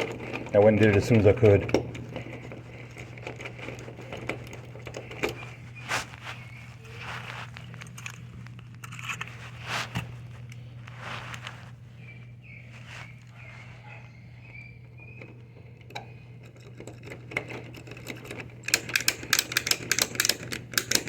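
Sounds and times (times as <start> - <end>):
lock pick scraping and ticking: 0.0 - 5.5, 8.8 - 9.3, 15.2 - 21.0.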